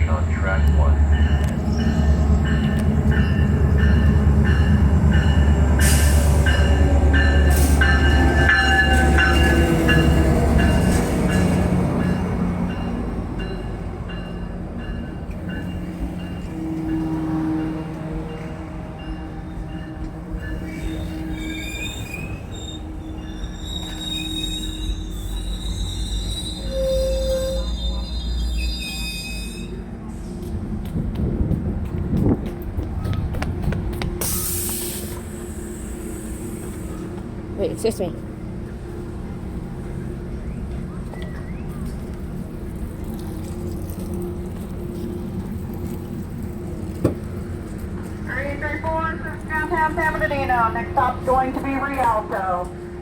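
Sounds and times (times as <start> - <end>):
train low rumble: 0.0 - 53.0
train wheels squealing: 19.7 - 29.8.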